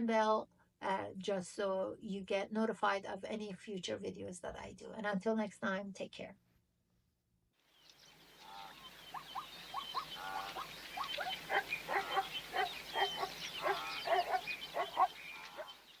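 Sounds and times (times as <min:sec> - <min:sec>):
rapid chirping animal calls: 0:07.9 - 0:16.0.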